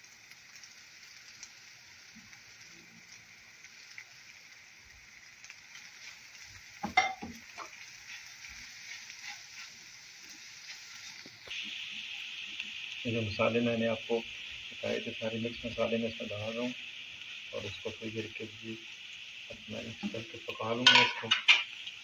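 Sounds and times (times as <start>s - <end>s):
onion sizzling in oil: 0.0s - 22.0s
utensil clattering against pan: 20.8s - 21.7s.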